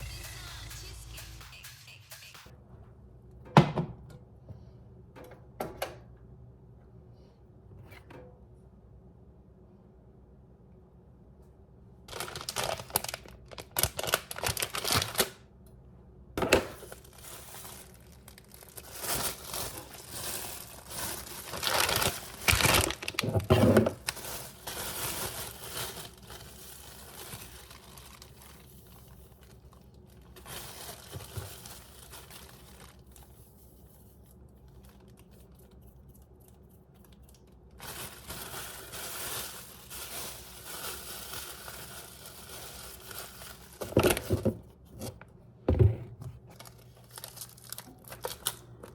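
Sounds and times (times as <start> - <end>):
packaging crinkling and tearing: 12.1 - 15.4, 16.7 - 45.1, 46.5 - 48.9.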